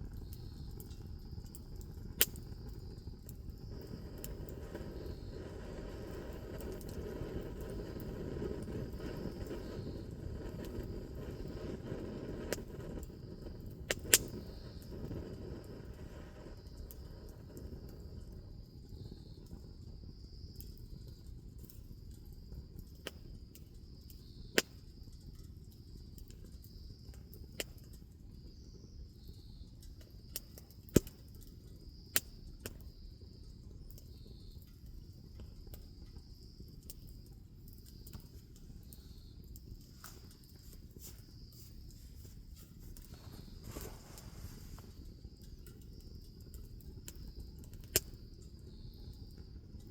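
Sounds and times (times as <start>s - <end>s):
bonfire crackling and popping: 0.0s - 49.9s
low steady hiss: 0.0s - 49.9s
high insect trill: 25.8s - 49.9s.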